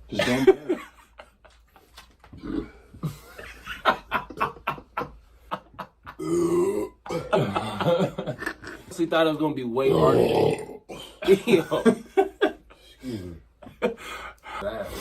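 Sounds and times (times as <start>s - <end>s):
man belching: 6.2s - 7.7s, 9.8s - 11.0s.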